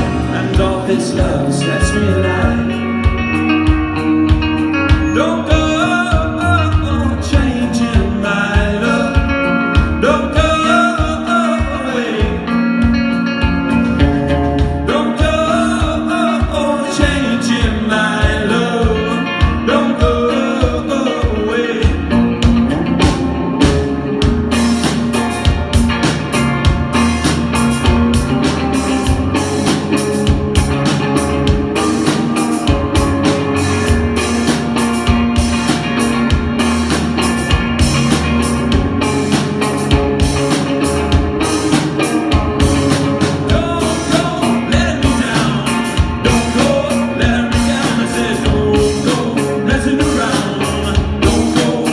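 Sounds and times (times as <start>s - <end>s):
person singing: 0.0s - 3.1s, 4.9s - 12.8s, 14.8s - 22.3s, 42.7s - 51.9s
rock band playing live: 0.0s - 51.9s.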